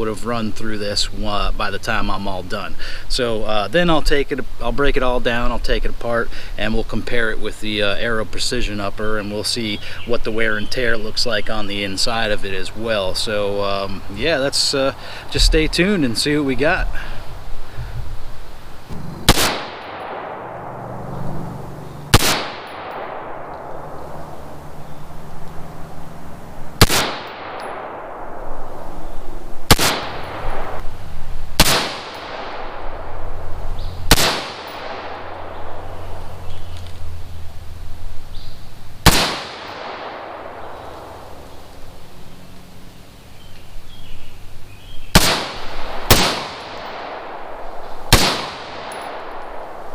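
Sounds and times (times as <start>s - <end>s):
rifle shots echoing: 18.9s - 30.8s, 31.5s - 33.5s, 34.1s - 36.4s, 39.0s - 42.2s, 45.1s - 49.9s.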